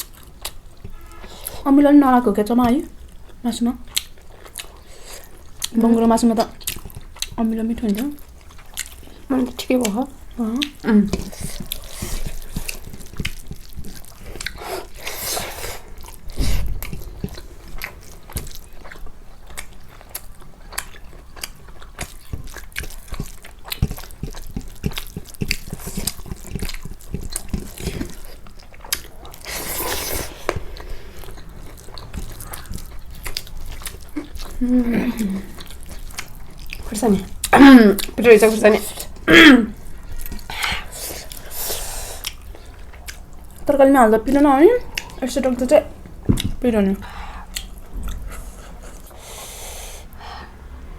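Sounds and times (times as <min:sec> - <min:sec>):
person chewing food: 0:00.0 - 0:01.7, 0:02.6 - 0:43.7, 0:44.3 - 0:50.8
dull thump: 0:16.3 - 0:17.4
wet mouth clicks: 0:19.5 - 0:34.6, 0:44.8 - 0:45.2.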